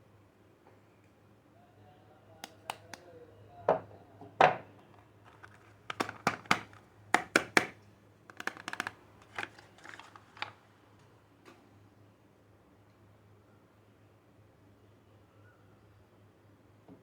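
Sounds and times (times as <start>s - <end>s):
packaging rustling: 5.0s - 10.6s
wrapper clicking and crackling: 5.0s - 10.6s.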